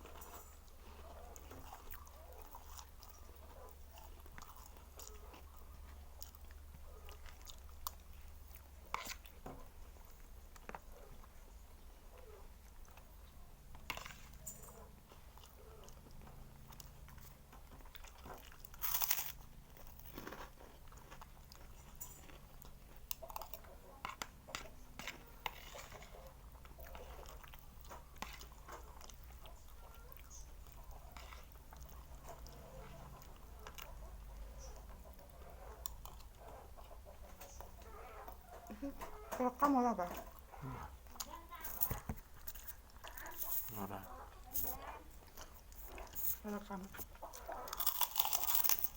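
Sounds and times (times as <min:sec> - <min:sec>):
person chewing and crunching: 0:00.0 - 0:48.9.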